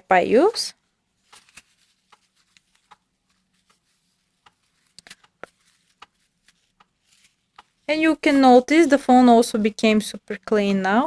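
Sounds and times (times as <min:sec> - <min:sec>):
wipe rubbing on phone screen: 0:01.2 - 0:07.7
phone being handled: 0:01.2 - 0:07.9.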